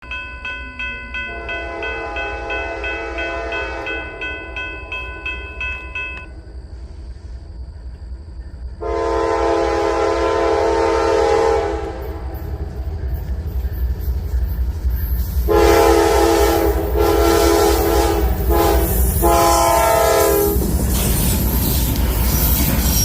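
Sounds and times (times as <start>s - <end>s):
railroad crossing bell dinging: 0.0s - 6.6s, 12.0s - 23.0s
locomotive air horn: 1.3s - 4.0s, 8.8s - 12.4s, 15.5s - 20.6s.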